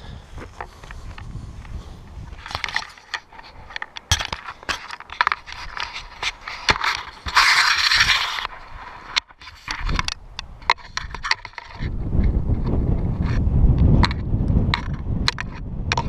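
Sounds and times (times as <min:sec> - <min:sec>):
footsteps crunching on snow: 0:00.0 - 0:09.9.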